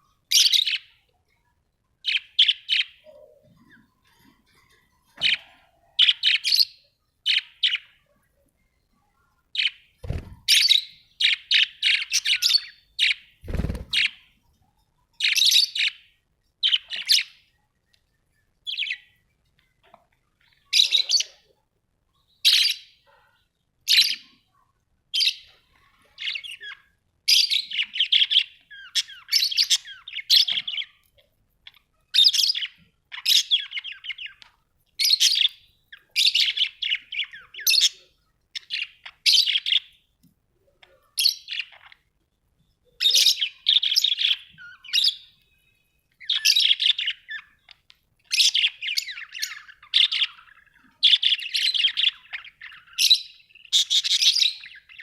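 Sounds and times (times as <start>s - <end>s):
budgerigars chirping: 43.0s - 45.4s, 46.2s - 55.0s.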